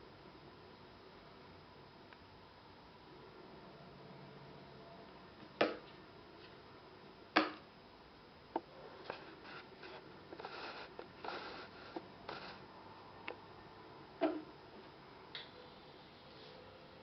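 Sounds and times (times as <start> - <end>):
rustling: 9.0 - 12.6.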